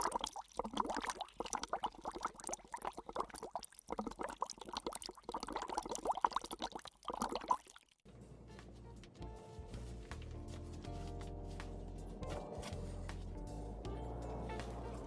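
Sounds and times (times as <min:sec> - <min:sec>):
water splashing and gurgling: 0:00.0 - 0:08.0.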